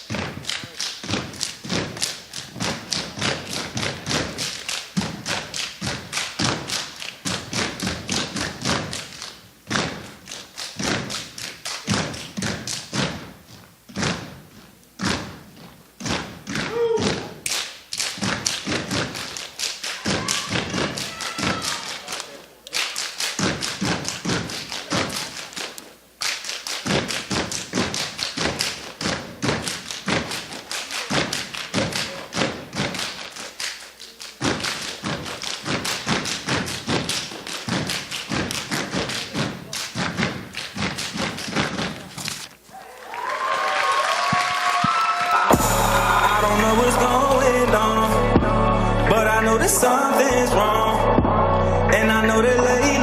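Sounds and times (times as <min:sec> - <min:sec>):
hand-struck beats: 0:00.0 - 0:21.9, 0:23.3 - 0:25.8, 0:26.7 - 0:33.6, 0:34.2 - 0:42.5
rhythmic stomps: 0:00.0 - 0:42.5, 0:44.2 - 0:53.0.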